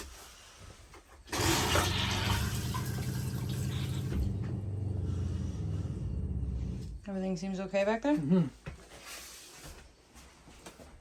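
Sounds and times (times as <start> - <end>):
toilet flushing water rushing: 1.3 - 5.2
low hum: 2.3 - 7.1.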